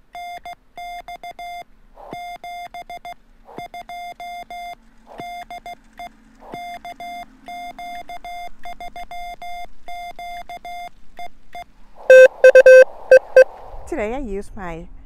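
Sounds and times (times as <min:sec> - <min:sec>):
morse code beeps: 0:00.2 - 0:01.6, 0:06.6 - 0:13.5.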